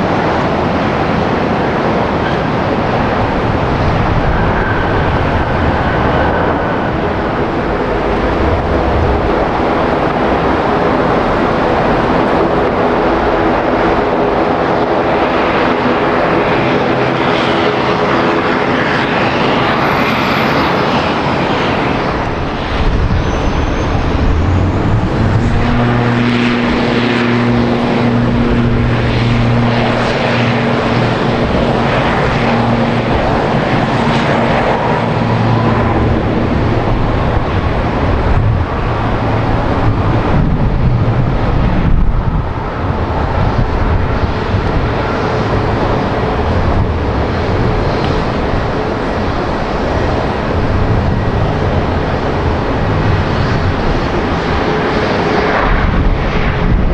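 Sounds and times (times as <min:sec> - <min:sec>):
airliner engines droning: 0:00.0 - 0:56.9.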